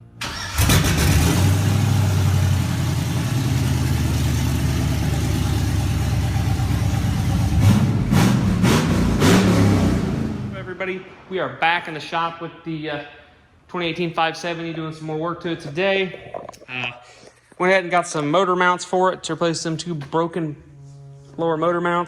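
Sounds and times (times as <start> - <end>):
engine idling and revving: 0.3 - 10.6.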